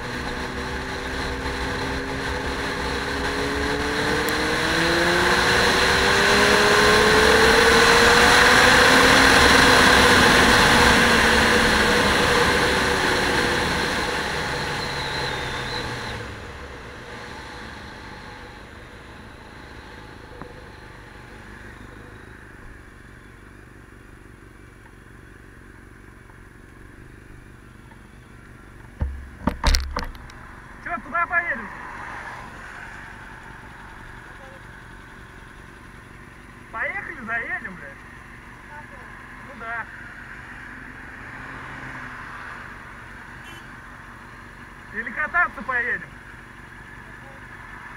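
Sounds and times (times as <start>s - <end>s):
vehicle engine passing by: 29.0s - 34.8s.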